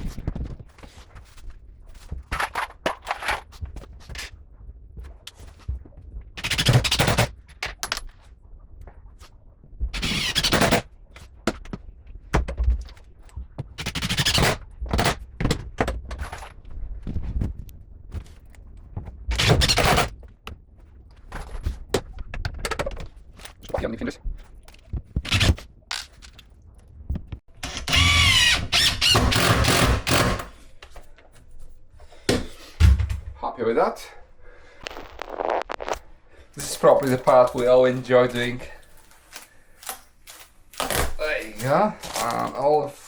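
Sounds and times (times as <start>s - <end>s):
cordless driver driving screws: 27.6s - 30.6s.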